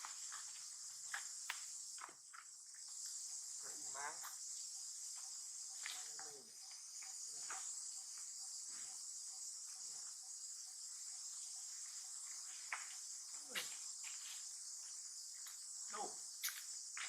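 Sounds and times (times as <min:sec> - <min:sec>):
high-pitched insect chorus: 0:00.0 - 0:17.0.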